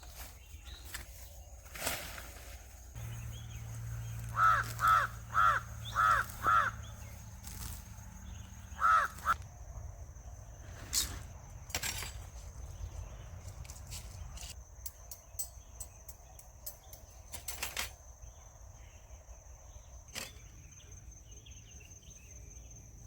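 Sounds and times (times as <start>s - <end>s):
crow cawing: 4.2s - 7.1s, 8.3s - 9.4s.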